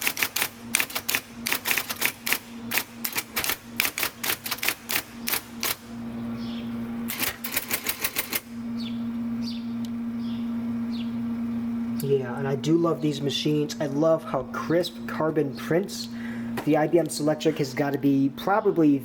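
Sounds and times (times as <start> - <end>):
electric typewriter keystrokes: 0.0 - 5.9, 7.1 - 8.5
typewriter motor humming: 0.0 - 6.0, 7.1 - 8.6.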